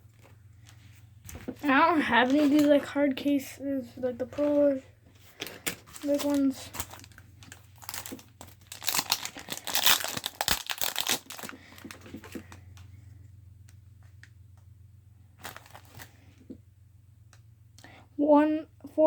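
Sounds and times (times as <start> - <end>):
plastic wrapping crinkling: 0.1 - 3.0, 4.3 - 12.9, 15.4 - 16.2.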